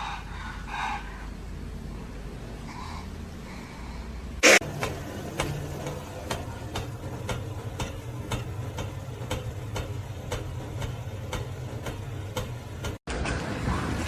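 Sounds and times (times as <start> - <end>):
steady low hum: 0.0 - 13.0
regular ticking: 4.6 - 13.0.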